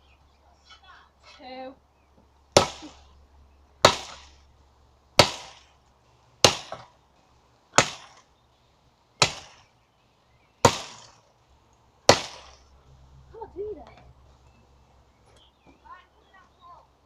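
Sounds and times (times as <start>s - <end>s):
axe chopping tree trunk: 2.6s - 3.1s, 3.8s - 4.4s, 5.2s - 5.7s, 6.4s - 6.9s, 7.8s - 8.2s, 9.2s - 9.6s, 10.6s - 11.2s, 12.1s - 12.6s.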